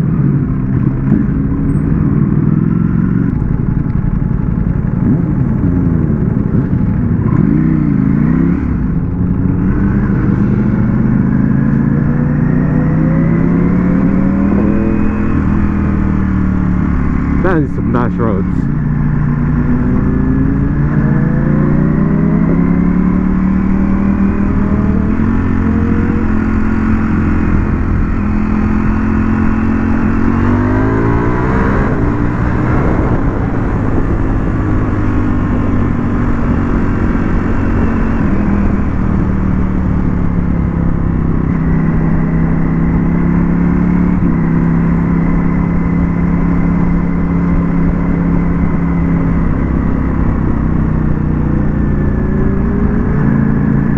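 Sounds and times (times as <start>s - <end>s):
motorcycle engine shifting gears: 0.0s - 53.9s
wind noise on microphone: 3.2s - 11.0s, 24.1s - 39.5s.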